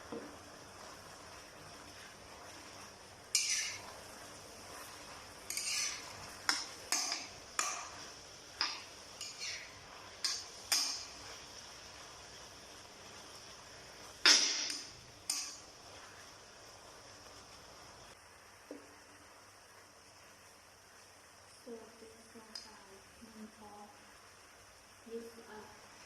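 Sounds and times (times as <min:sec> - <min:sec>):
faint steady hiss: 0:00.0 - 0:26.0
metal utensil scraping a pan: 0:01.9 - 0:11.4, 0:14.2 - 0:15.7.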